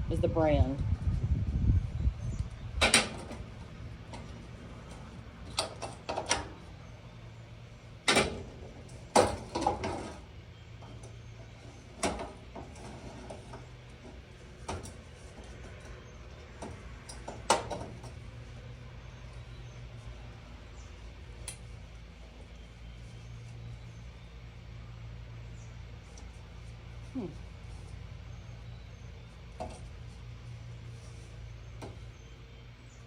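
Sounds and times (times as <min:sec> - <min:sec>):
steady low hum: 0:00.0 - 0:33.0
stove parts knocking and clanking: 0:02.8 - 0:03.5, 0:04.1 - 0:06.7, 0:08.0 - 0:18.2.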